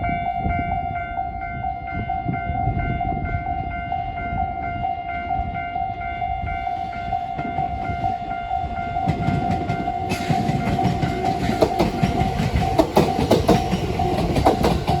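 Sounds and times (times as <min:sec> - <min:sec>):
level crossing warning bell: 0:00.0 - 0:15.0
train passing: 0:00.0 - 0:15.0
wheels clicking over rail joints: 0:07.4 - 0:15.0.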